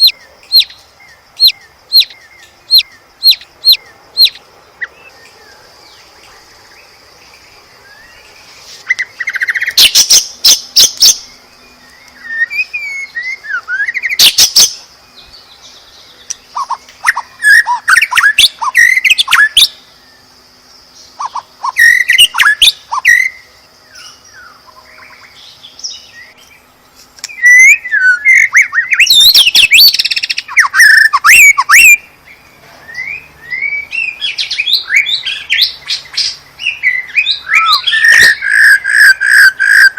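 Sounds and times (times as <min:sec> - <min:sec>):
songbird whistling and chattering: 0:00.0 - 0:05.3, 0:08.8 - 0:15.5, 0:16.3 - 0:19.8, 0:21.1 - 0:26.4, 0:27.2 - 0:32.0, 0:32.8 - 0:39.9
faint high-pitched hiss: 0:00.0 - 0:38.0.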